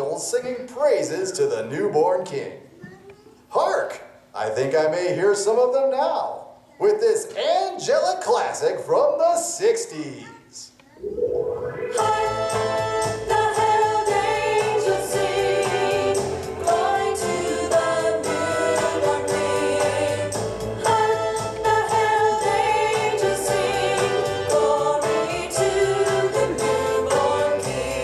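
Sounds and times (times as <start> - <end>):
choir singing with backing band: 11.8 - 28.0.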